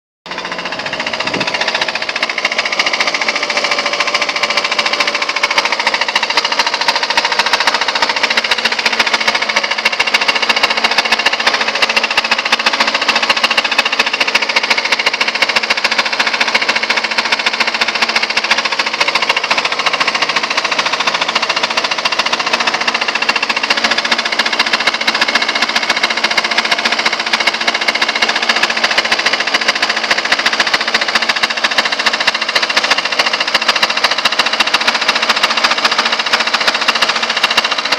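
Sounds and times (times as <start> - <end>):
car engine running: 0.3 - 37.9
metallic engine knocking: 0.3 - 37.9.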